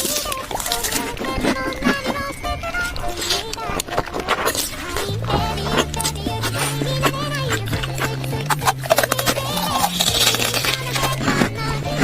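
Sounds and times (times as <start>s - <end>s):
background music with bass line: 5.1s - 12.0s.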